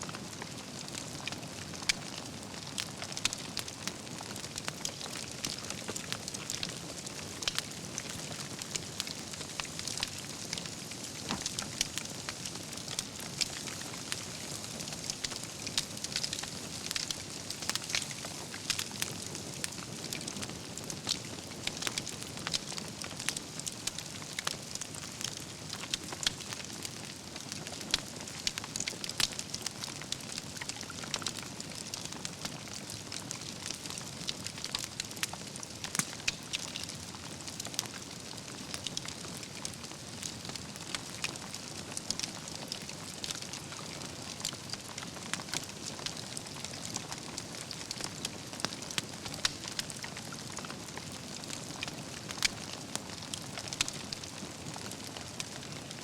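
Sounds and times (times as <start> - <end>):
wood fire crackling and popping: 0.1 - 56.0.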